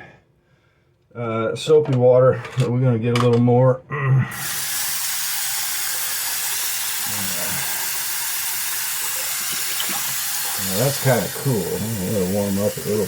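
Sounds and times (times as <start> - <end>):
water tap running: 4.3 - 13.0.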